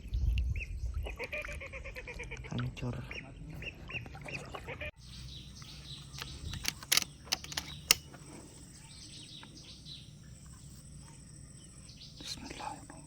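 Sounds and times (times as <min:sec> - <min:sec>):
birds chirping: 0:00.6 - 0:13.0
sharp clicks: 0:05.6 - 0:08.2.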